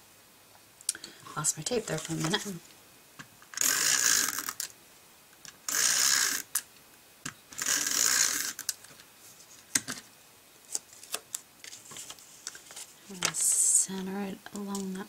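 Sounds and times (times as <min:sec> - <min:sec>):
tape rasping onto paper: 0:07.5 - 0:08.8.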